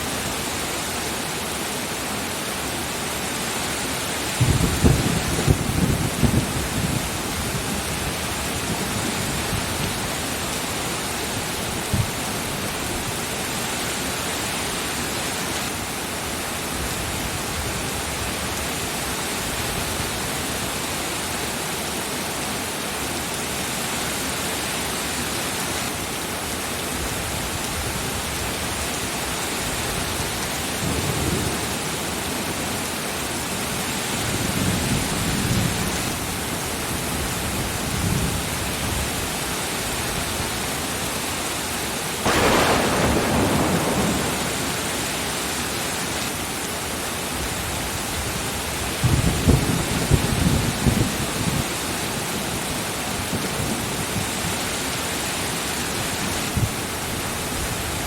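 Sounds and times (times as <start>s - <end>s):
heavy rain: 0.0s - 58.0s
thunder rumbling: 4.3s - 10.7s, 42.2s - 46.4s
loud thunderclap: 4.4s - 7.8s, 42.2s - 46.2s.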